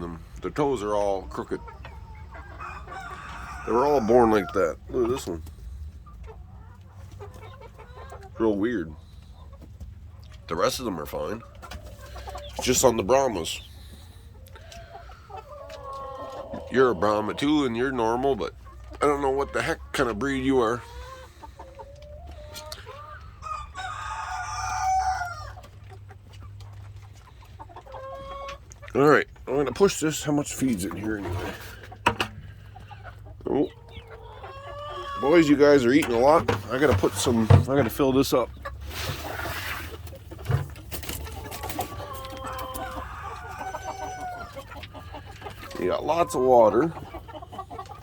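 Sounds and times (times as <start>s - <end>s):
roosters clucking: 0.0s - 48.0s
drawn-out rooster calls: 2.4s - 4.6s, 23.4s - 25.6s, 41.7s - 44.7s.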